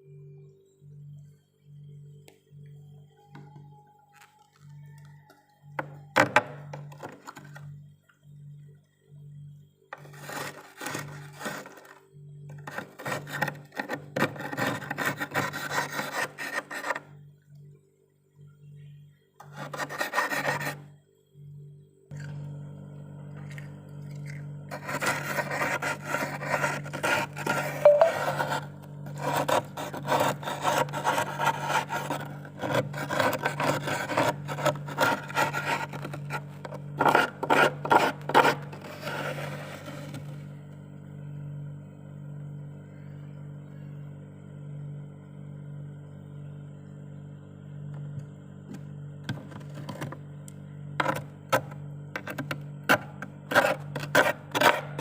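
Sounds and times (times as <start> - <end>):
freezer low hum: 0.0 - 55.0
metal spoon scraping frost: 10.0 - 12.0, 23.4 - 40.2, 53.5 - 55.0.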